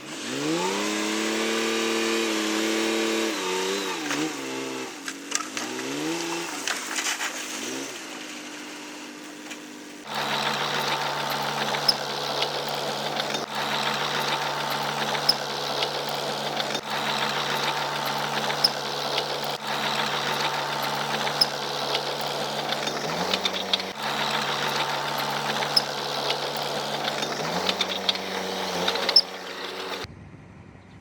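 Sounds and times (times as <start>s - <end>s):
bulldozer diesel engine clattering: 9.6s - 30.1s.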